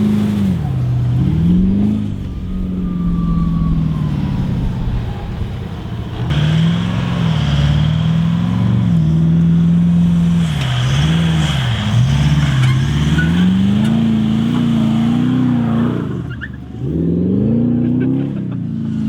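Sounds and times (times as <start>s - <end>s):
engine revving: 0.0s - 19.0s.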